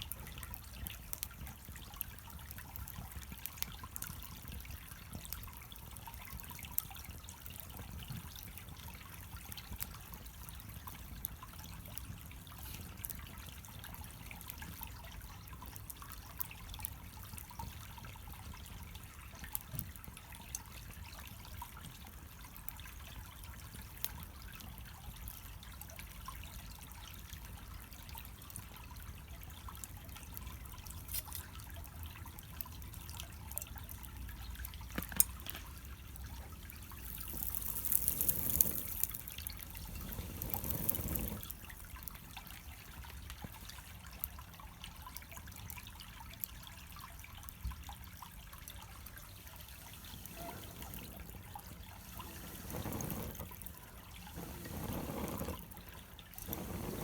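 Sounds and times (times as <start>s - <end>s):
low rumble of burning: 0.0s - 57.0s
fire crackling and popping: 0.1s - 26.4s, 33.8s - 43.8s, 49.2s - 57.0s.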